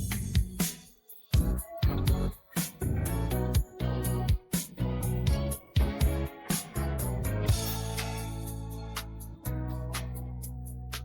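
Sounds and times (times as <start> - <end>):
drum beat: 0.0 - 8.4
guitar: 0.0 - 11.0.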